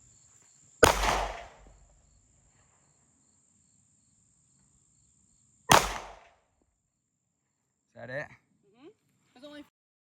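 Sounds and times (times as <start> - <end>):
high insect whine: 0.0 - 5.7
gunshots with echo: 0.8 - 1.8, 5.7 - 6.3.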